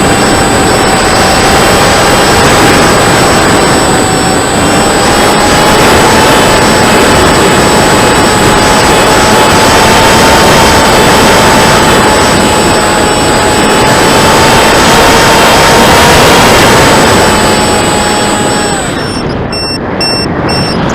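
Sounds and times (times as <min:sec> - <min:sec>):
electric motor whine: 0:00.0 - 0:20.9
wind rushing on microphone: 0:00.0 - 0:20.9.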